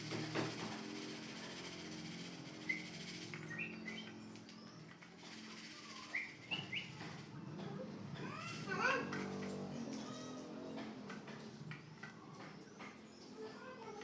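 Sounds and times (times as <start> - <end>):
bird chirping: 2.6 - 7.2.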